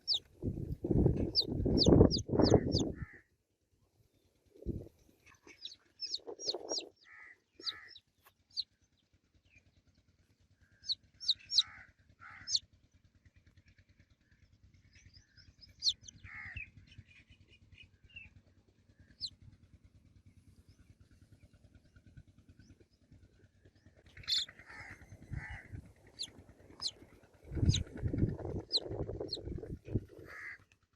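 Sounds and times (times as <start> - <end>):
lower rough chick calls: 0.0 - 0.3, 0.9 - 3.2, 5.5 - 8.6, 10.8 - 12.6, 15.6 - 16.7, 24.2 - 30.6
baby chicks peeping: 0.0 - 3.0, 5.5 - 8.6, 10.8 - 11.7, 12.3 - 12.6, 15.6 - 16.6, 24.2 - 30.4.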